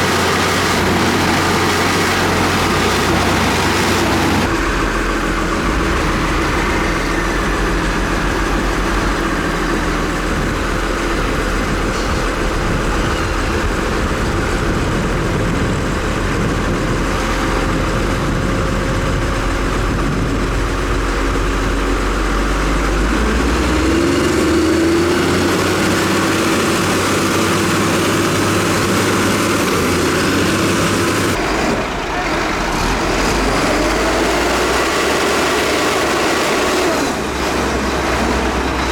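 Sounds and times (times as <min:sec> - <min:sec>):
heavy diesel engines running: 0:00.0 - 0:38.9.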